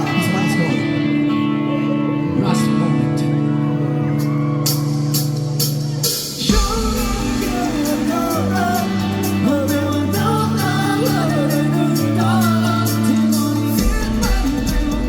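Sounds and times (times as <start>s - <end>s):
live rock band playing: 0.0s - 15.0s
person singing: 6.0s - 15.0s.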